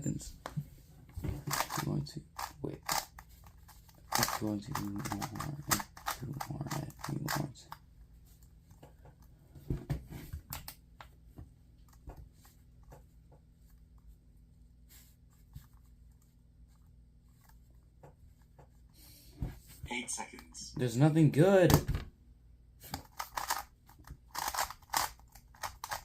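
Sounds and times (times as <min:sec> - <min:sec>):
plastic puzzle cube clicking: 0:04.0 - 0:07.4, 0:22.9 - 0:26.0.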